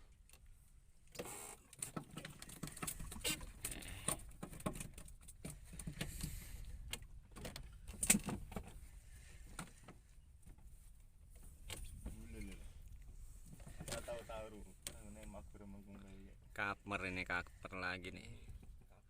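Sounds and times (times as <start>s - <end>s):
gear handling clicks and knocks: 1.1s - 8.8s.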